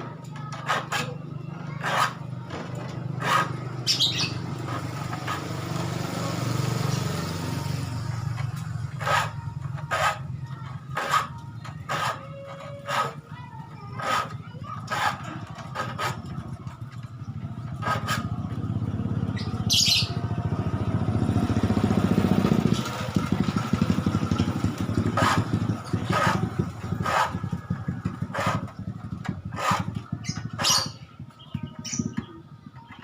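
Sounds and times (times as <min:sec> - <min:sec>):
motorcycle engine running: 0:00.0 - 0:33.0
file rasping on saw teeth: 0:00.6 - 0:02.3, 0:03.1 - 0:05.5, 0:08.9 - 0:16.6, 0:17.8 - 0:18.6, 0:25.1 - 0:28.7, 0:29.4 - 0:31.0
bird chirp: 0:03.8 - 0:04.5, 0:19.3 - 0:20.3, 0:30.1 - 0:33.0.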